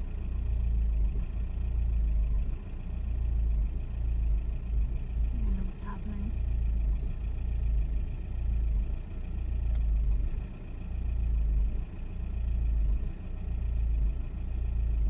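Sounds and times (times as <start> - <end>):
diesel engine running with misfire: 0.0 - 15.0.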